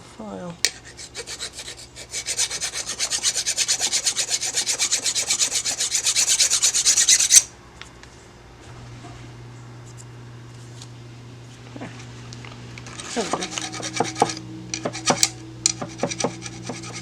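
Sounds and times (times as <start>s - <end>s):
hand file rasping on metal: 0.8s - 7.5s, 13.0s - 17.0s.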